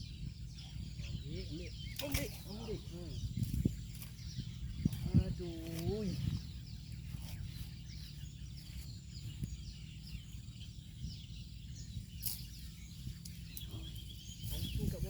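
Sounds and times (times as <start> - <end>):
small birds chirping: 0.0 - 15.0
steady low rumble: 0.0 - 15.0
sharp click: 1.9 - 2.4.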